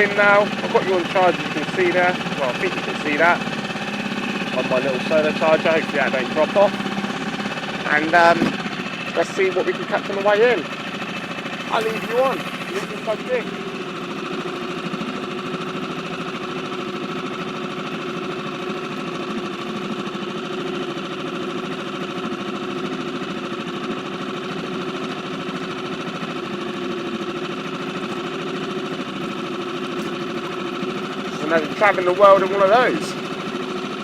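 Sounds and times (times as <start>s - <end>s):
outboard motor running: 0.0s - 34.0s.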